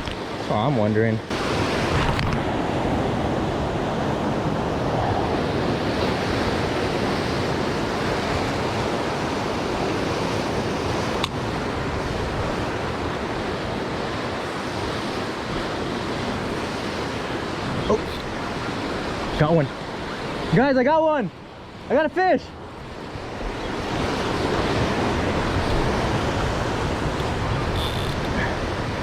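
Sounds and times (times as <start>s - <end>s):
surf washing against rocks: 0.0s - 29.0s.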